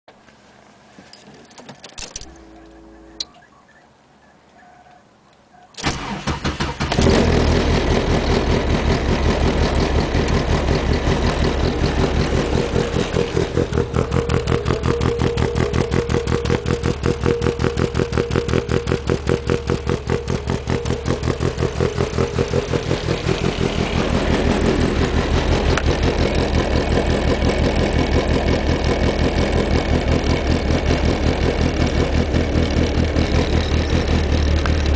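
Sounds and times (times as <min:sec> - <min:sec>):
car engine starting and idling: 0:05.8 - 0:34.9.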